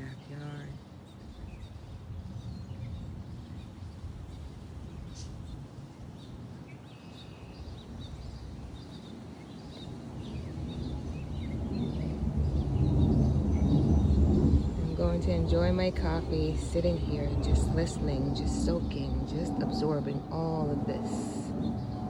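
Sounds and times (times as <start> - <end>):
low breeze rumble: 0.0 - 22.0
low engine rumble: 10.5 - 22.0.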